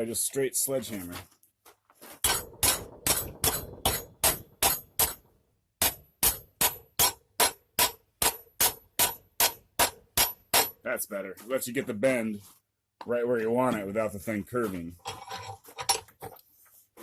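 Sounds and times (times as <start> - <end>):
sledgehammer striking steel strip: 2.2 - 10.8.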